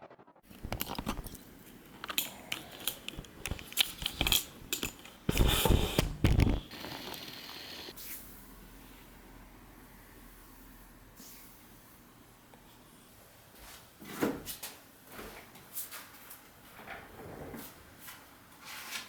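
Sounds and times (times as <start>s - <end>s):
small objects clicking and knocking: 0.4s - 7.3s.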